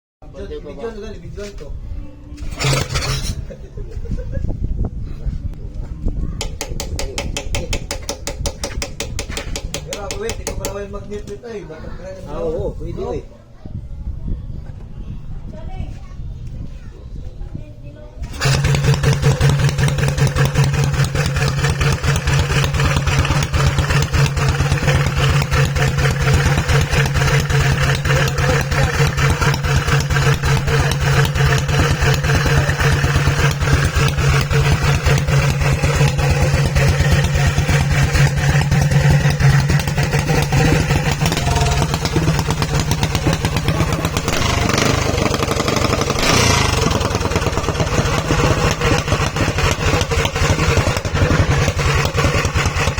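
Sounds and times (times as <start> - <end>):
engine running loud: 18.2 - 52.9.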